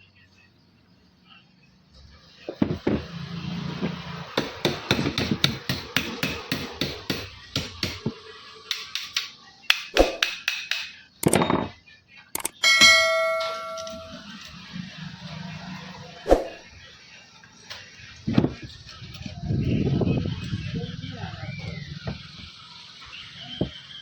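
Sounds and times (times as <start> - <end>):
metal tapping and knocking: 12.4 - 14.2
metal part ringing: 12.4 - 14.5.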